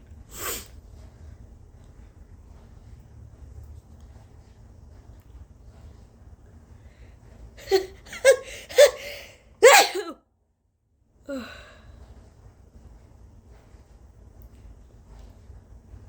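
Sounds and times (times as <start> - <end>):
woman gasping breaths: 7.6 - 10.1, 11.3 - 12.1
woman sneezing: 7.6 - 10.2.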